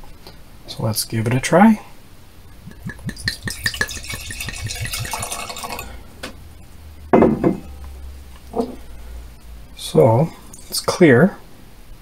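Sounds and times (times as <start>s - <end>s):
wine pouring into a glass: 2.5s - 6.0s, 10.3s - 11.0s
glass clicks and clinks: 2.6s - 6.0s.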